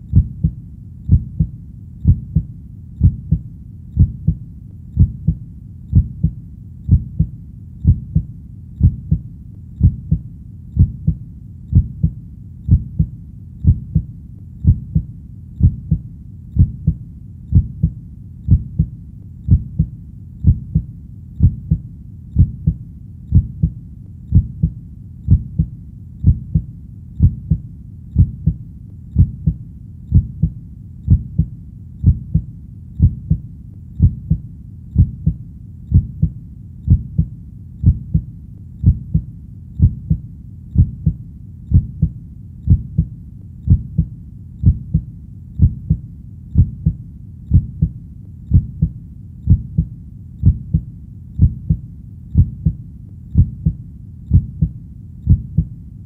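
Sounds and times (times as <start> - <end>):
heartbeat thumps: 0.0 - 55.8
low background hum: 0.0 - 56.0.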